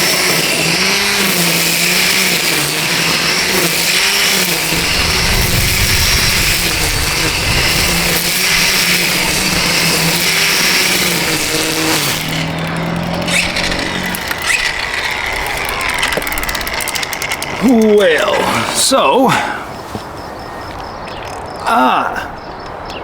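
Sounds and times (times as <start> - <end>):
motor hum: 0.0 - 18.8
string trimmer cutting grass: 0.0 - 21.6
small clicks: 12.0 - 18.0, 20.7 - 21.6.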